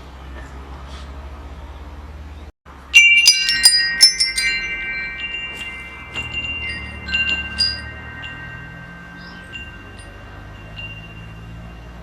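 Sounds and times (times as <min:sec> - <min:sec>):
metal wind chimes ringing: 0:02.7 - 0:12.0.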